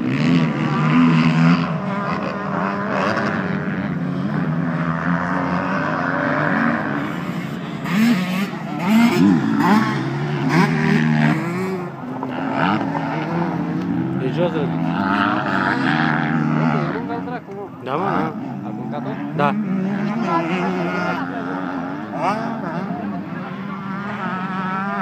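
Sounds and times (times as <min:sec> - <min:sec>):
motocross engines revving: 0:00.0 - 0:25.0.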